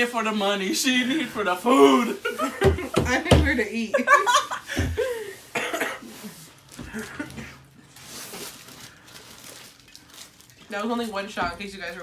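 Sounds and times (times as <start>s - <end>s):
person coughing: 5.5s - 7.6s.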